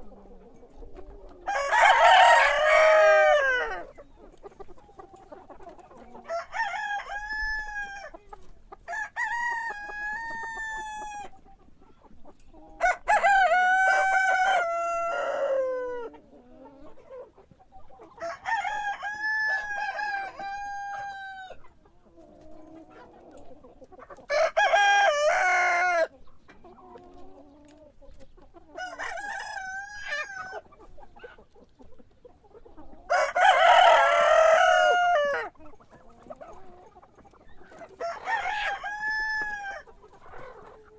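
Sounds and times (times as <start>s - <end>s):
roosters crowing: 1.1s - 4.0s, 6.0s - 8.1s, 8.8s - 11.3s, 12.8s - 16.2s, 18.1s - 21.6s, 24.2s - 26.1s, 28.7s - 30.7s, 33.1s - 35.6s, 37.7s - 40.8s.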